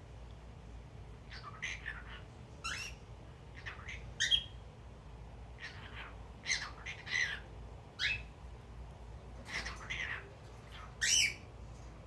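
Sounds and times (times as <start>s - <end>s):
cockatiel chirps and squawks: 1.3s - 3.0s, 3.6s - 4.5s, 5.6s - 8.3s, 9.4s - 11.4s.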